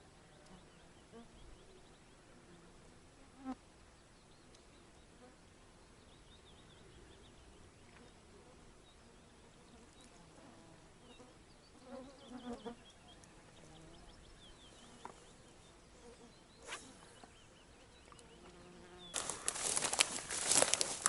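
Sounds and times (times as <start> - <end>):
loud rustling and crackling: 19.2 - 21.0.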